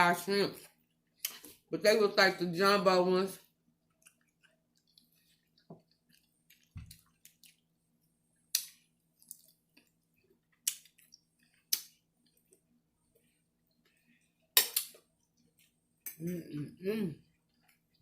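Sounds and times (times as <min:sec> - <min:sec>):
person chewing: 0:03.7 - 0:16.3, 0:17.2 - 0:18.0.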